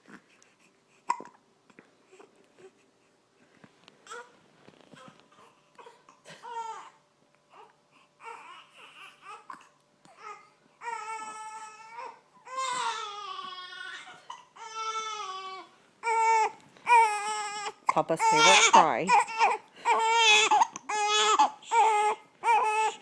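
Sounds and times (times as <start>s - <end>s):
baby fussing and whimpering: 0.0s - 3.2s, 4.9s - 23.0s
baby crying with long wails: 5.0s - 23.0s.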